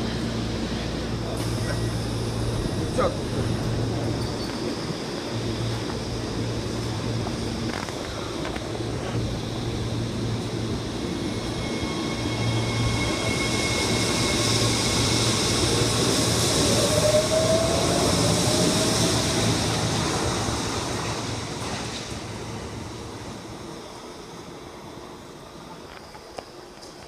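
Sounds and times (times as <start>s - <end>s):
train inverter whine rising in pitch: 1.6s - 21.7s.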